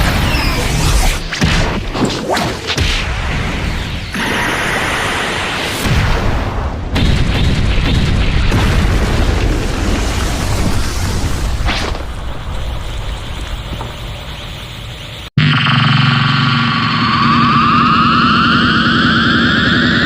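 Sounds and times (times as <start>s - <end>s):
explosion boom: 5.8s - 14.4s.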